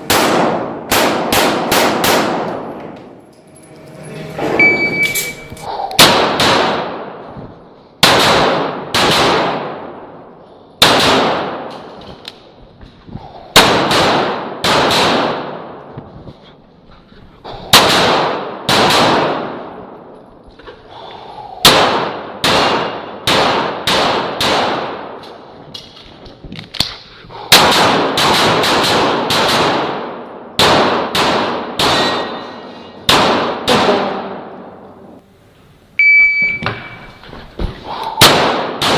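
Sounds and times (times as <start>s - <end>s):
pistol shots: 0.0s - 2.7s, 6.0s - 7.2s, 8.0s - 10.0s, 10.8s - 11.7s, 13.6s - 15.7s, 17.7s - 19.7s, 21.6s - 25.2s, 27.5s - 32.3s, 33.1s - 34.5s, 38.2s - 38.9s.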